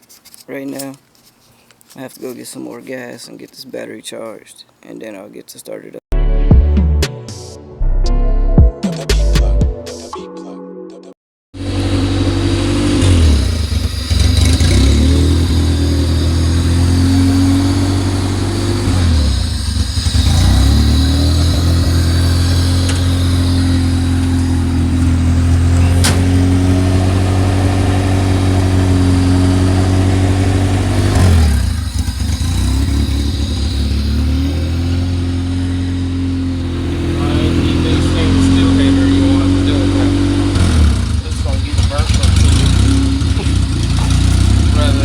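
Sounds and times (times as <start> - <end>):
car engine rough idle: 11.6 - 45.0.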